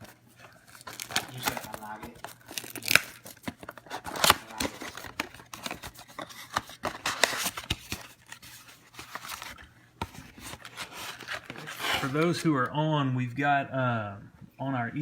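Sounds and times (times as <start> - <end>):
foil wrapper crinkling and tearing: 0.0 - 9.6
card boxes clicking and snapping: 0.8 - 8.2.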